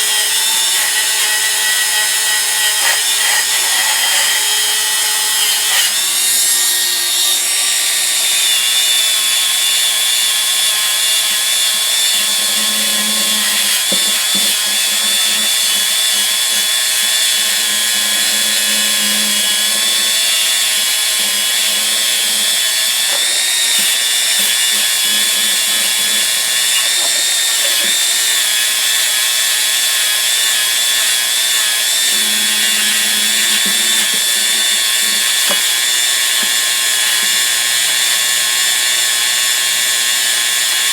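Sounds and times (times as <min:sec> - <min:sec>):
grinding wheel whine and hiss: 0:11.8 - 0:40.9.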